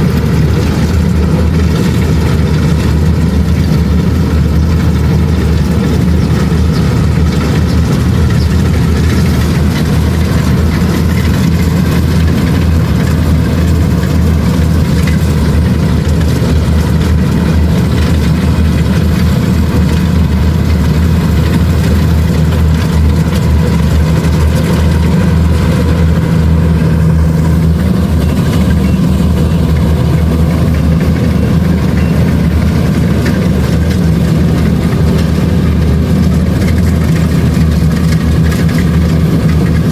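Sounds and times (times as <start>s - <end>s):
combine harvester diesel engine droning: 0.0s - 39.9s.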